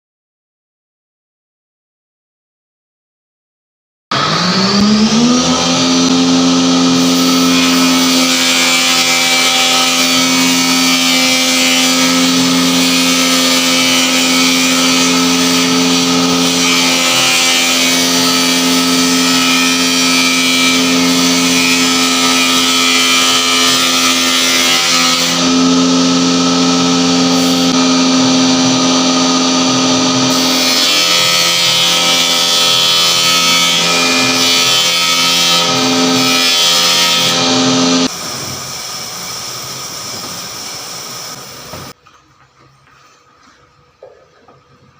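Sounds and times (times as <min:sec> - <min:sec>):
woodworking machine motor whining: 0:04.1 - 0:42.0
hiss: 0:38.1 - 0:41.9.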